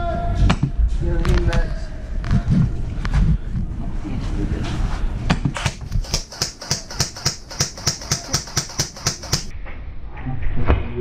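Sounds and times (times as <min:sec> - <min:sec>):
rapid even ticking: 0:05.7 - 0:09.5.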